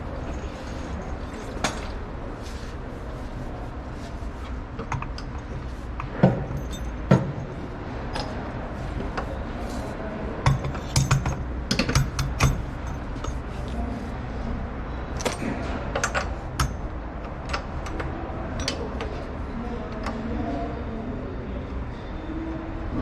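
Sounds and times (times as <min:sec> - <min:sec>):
steady low hum: 0:00.0 - 0:22.9
metal tools clinking and knocking: 0:04.8 - 0:08.4, 0:10.5 - 0:13.5.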